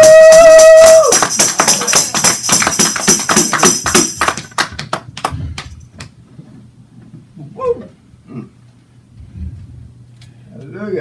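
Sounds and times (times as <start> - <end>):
tambourine shaken and struck: 0.0 - 4.8.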